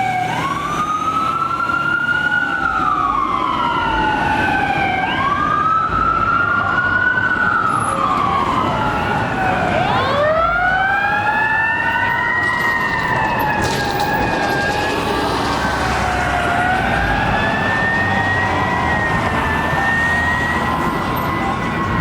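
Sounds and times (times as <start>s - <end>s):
electronic wail siren: 0.0s - 22.0s
mechanical siren: 0.0s - 22.0s.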